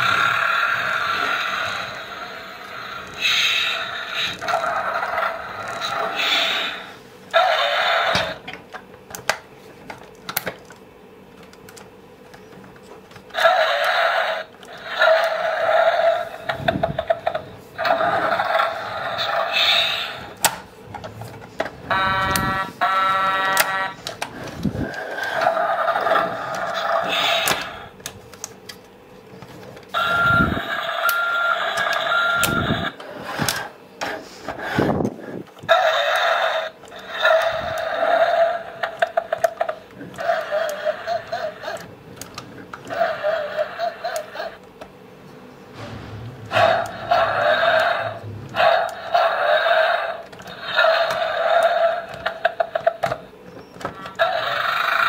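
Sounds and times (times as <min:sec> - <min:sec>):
toy electronic sound effects: 0:00.7 - 0:08.4, 0:21.8 - 0:24.1, 0:29.9 - 0:33.0.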